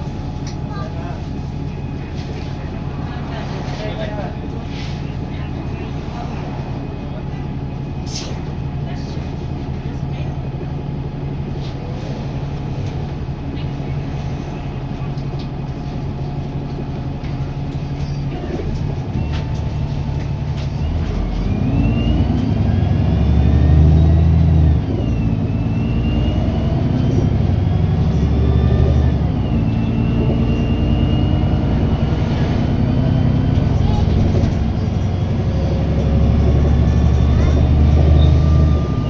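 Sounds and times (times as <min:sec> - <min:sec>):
bus engine accelerating: 0:00.0 - 0:39.0.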